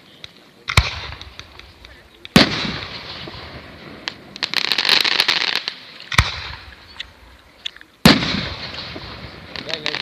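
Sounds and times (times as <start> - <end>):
fireworks crackling: 0.0 - 10.0
scattered firework pops: 0.1 - 10.0
loud firework bang: 8.1 - 9.7.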